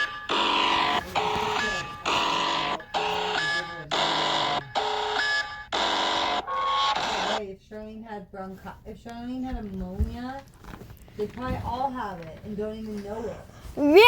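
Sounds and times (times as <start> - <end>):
electronic emergency alert tone: 0.0 - 7.4.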